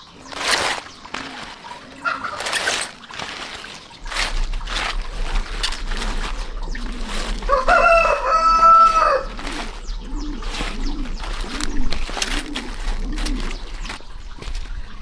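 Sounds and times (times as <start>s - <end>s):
dove cooing: 0.0s - 15.0s
rooster crowing: 7.4s - 9.7s.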